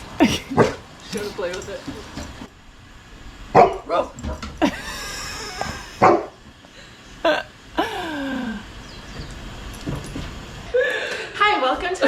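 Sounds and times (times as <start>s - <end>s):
dog barking: 3.5s - 3.9s, 6.0s - 6.4s.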